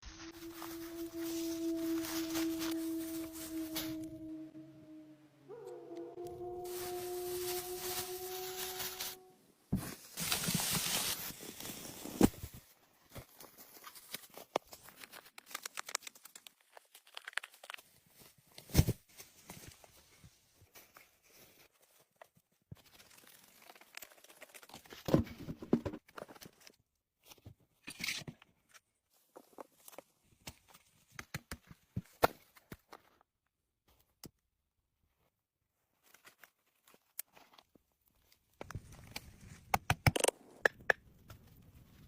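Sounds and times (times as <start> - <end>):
dry reeds rustling and crackling: 0.1 - 4.2, 6.6 - 9.3.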